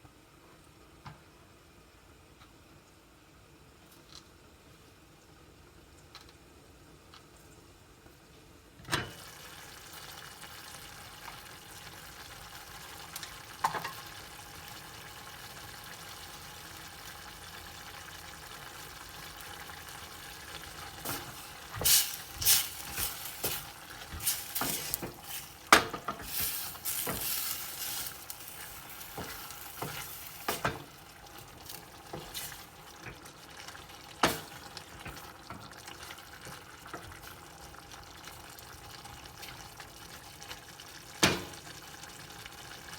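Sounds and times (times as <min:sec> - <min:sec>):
food sizzling in a pan: 0:09.0 - 0:42.9
utensil scraping a pan: 0:21.0 - 0:30.8.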